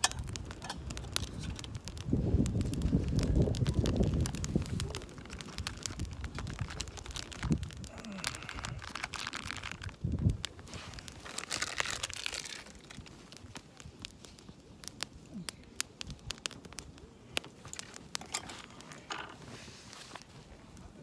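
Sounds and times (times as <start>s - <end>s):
wood fire crackling: 0.0s - 21.0s
short rustle: 18.4s - 20.6s.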